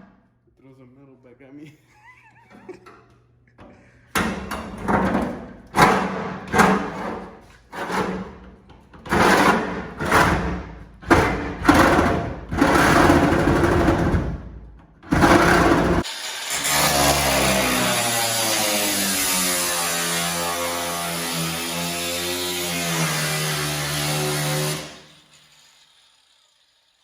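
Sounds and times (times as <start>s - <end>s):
power tool cutting sheet metal: 15.1s - 27.0s.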